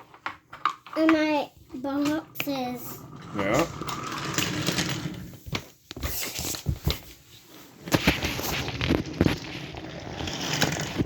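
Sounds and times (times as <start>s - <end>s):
wooden toy train pieces clacking: 0.0s - 5.2s.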